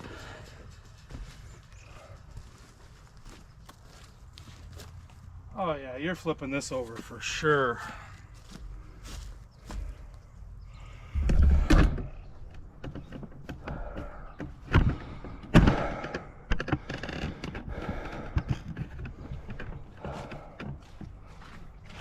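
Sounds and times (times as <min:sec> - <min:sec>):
deep rumble: 0:08.4 - 0:12.8.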